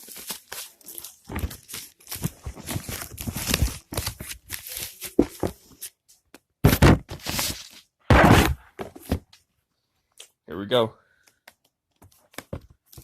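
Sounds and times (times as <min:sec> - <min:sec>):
packaging rustling and tearing: 0:00.0 - 0:05.9.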